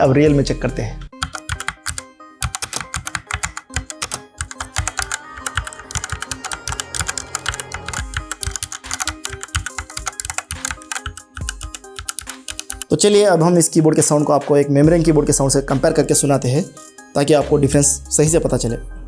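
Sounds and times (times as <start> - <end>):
background music: 0.0 - 19.0
mechanical keyboard typing: 1.2 - 13.0.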